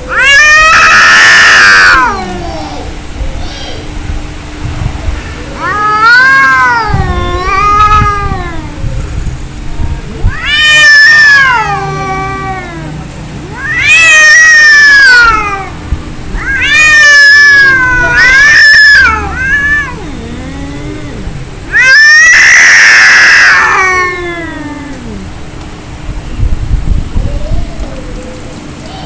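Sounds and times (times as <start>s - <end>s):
harsh cat screech: 0.0s - 2.5s, 5.5s - 8.9s, 10.2s - 25.2s
cats yowling: 0.0s - 3.9s, 5.4s - 25.6s, 27.0s - 29.0s
cat growling moans: 5.5s - 9.4s, 10.1s - 25.5s.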